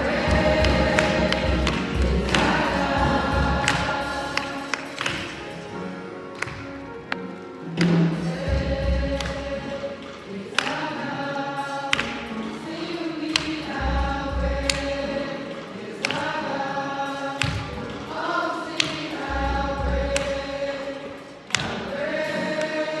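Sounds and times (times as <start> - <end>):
low thudding beat: 0.0 - 5.6
sharp percussive hits: 0.0 - 5.7
choir singing gospel: 0.0 - 23.0.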